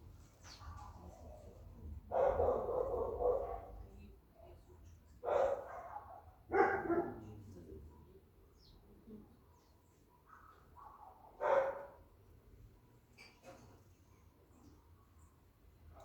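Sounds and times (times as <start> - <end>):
dog barks: 2.1 - 3.8, 5.2 - 7.4, 10.2 - 12.0.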